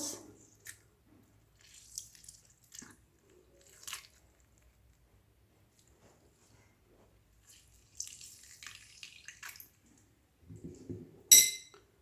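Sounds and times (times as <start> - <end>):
sharp ringing clink: 11.3 - 11.8.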